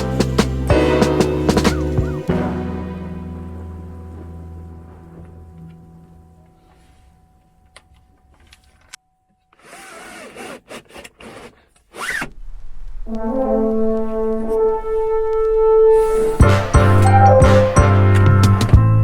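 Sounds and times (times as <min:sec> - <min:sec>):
loud brass music: 0:00.0 - 0:05.0, 0:13.1 - 0:19.0
soft background music: 0:00.0 - 0:09.4, 0:13.1 - 0:19.0.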